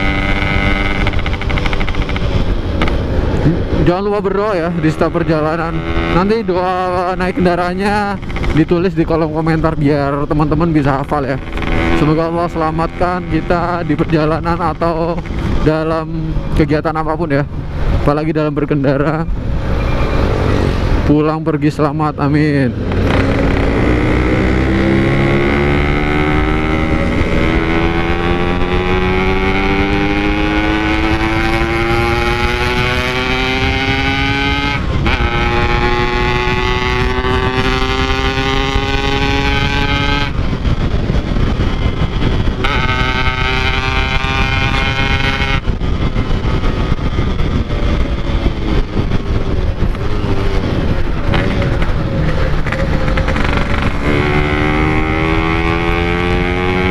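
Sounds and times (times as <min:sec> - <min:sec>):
two-stroke motorcycle engine revving: 0:00.0 - 0:16.5, 0:22.0 - 0:56.9.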